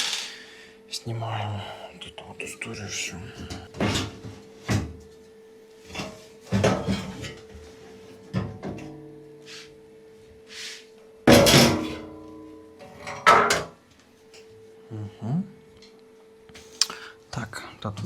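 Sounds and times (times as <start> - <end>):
faint steady hum: 0.0 - 18.0
washing machine parts clattering: 6.0 - 7.4, 11.3 - 12.1.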